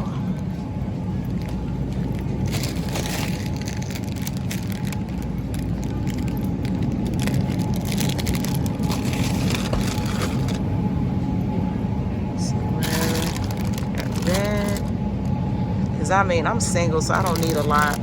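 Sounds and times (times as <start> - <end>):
low store hum: 0.0 - 18.0
crinkling handling noise: 1.2 - 10.8, 12.8 - 14.9, 17.1 - 18.0.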